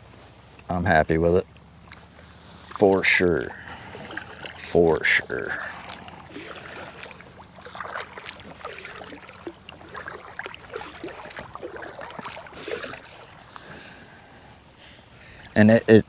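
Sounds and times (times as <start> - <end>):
paddle splashing in water: 1.6 - 14.4
water dripping: 3.4 - 13.7.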